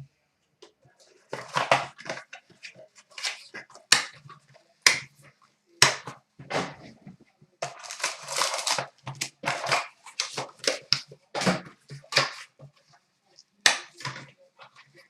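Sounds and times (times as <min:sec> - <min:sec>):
plastic wrap crinkling and tearing: 0:07.6 - 0:12.6.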